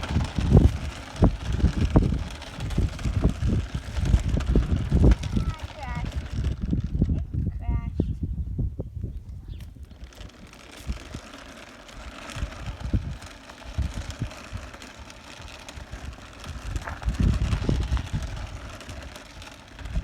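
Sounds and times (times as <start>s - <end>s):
toy car motor hissing: 9.9s - 20.0s.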